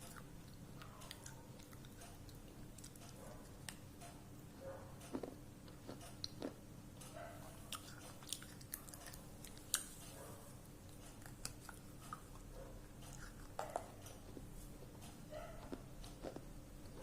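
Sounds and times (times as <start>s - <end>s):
person chewing something brittle: 0.0s - 3.8s, 5.0s - 6.6s, 7.6s - 10.2s, 10.9s - 15.0s, 15.6s - 17.0s.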